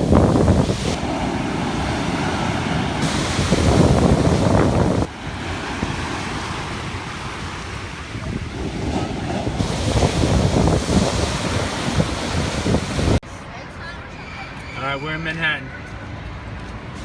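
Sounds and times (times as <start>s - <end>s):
ocean surf breaking: 0.0s - 13.2s
wind buffeting microphone: 0.0s - 13.2s.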